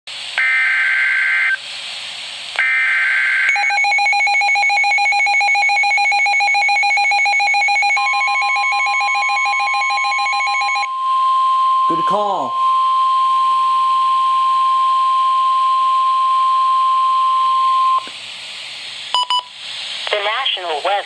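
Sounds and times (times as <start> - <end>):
pulsing buzzing alarm: 0.4 - 1.6, 2.6 - 18.0
steady high tone: 6.8 - 18.1
hiss: 18.1 - 20.1.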